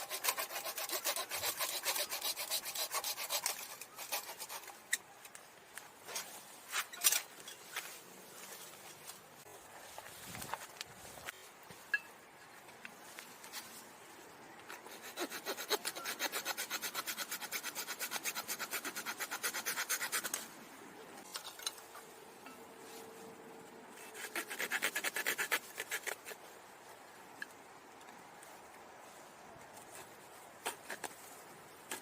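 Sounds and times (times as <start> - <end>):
hand saw cutting wood: 0.0 - 4.9, 14.8 - 20.4, 24.0 - 26.4.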